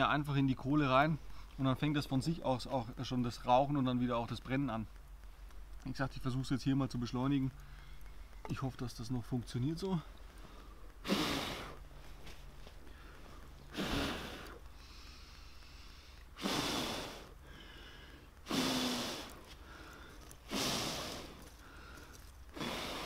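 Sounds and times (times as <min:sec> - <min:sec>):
person blowing hard on embers: 0:10.4 - 0:12.1, 0:13.6 - 0:21.9, 0:22.5 - 0:23.0.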